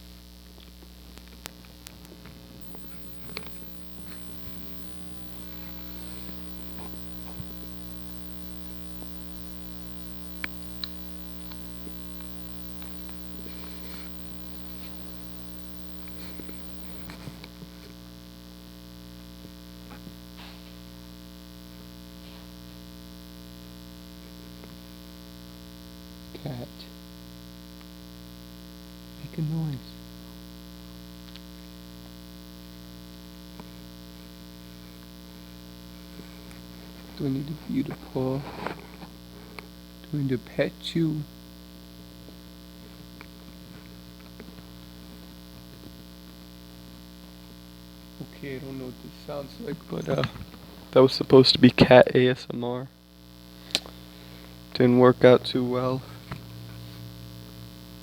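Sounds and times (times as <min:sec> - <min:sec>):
electrical hum: 0:00.0 - 0:58.0
faint clicks and handling noises: 0:00.6 - 0:17.6.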